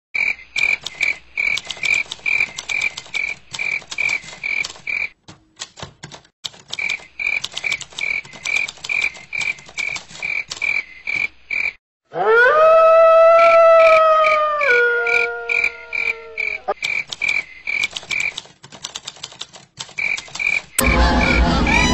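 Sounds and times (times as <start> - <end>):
loud rising wail: 20.8 - 21.9.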